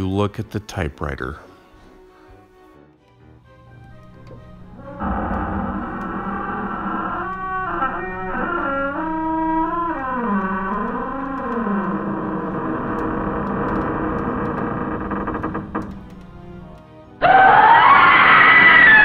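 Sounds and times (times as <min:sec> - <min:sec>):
held music chord: 0:00.0 - 0:05.0.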